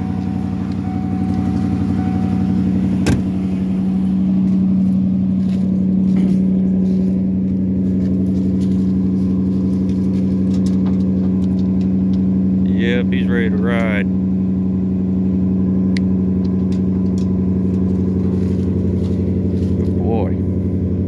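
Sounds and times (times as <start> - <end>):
truck engine idling: 0.0 - 21.0.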